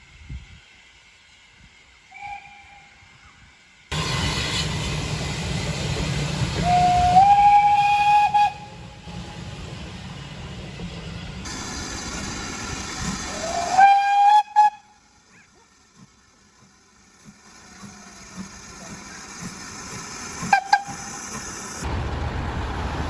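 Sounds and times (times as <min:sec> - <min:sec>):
locomotive hissing and rumbling: 0:00.0 - 0:23.0
steam locomotive whistle: 0:02.1 - 0:03.2, 0:06.6 - 0:08.9, 0:13.3 - 0:15.0, 0:20.4 - 0:21.2.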